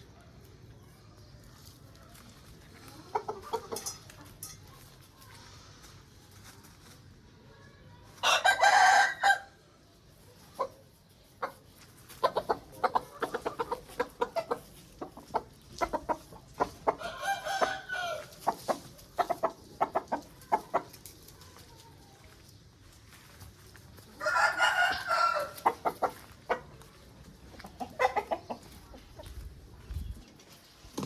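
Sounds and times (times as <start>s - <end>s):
chickens clucking: 0.0s - 7.2s, 9.6s - 31.0s
rooster crowing: 8.2s - 9.5s, 17.0s - 18.3s, 24.2s - 25.6s.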